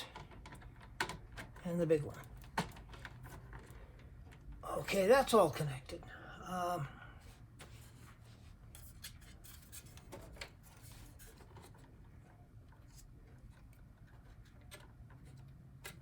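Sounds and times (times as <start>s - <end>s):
low steady hum: 3.5s - 9.8s.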